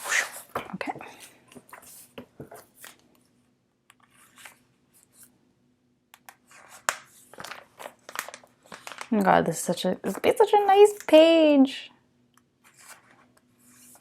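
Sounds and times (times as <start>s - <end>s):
plastic sleeves rustling: 6.4s - 11.3s.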